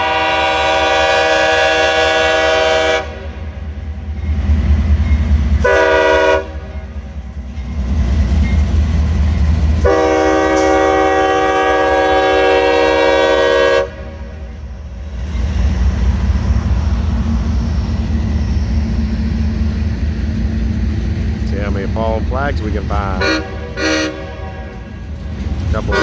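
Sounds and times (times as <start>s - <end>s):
locomotive air horn: 0.0s - 3.4s, 5.6s - 6.6s, 9.8s - 14.2s, 22.5s - 25.0s, 25.7s - 26.0s
low train rumble: 0.0s - 26.0s.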